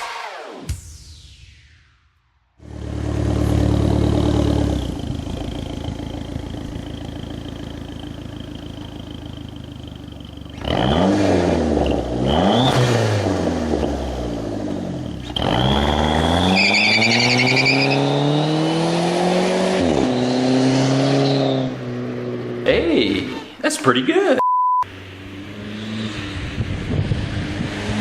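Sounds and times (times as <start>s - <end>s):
car engine accelerating: 2.6s - 23.6s, 24.9s - 28.0s
high turbo whistle: 16.0s - 18.8s, 19.8s - 21.8s.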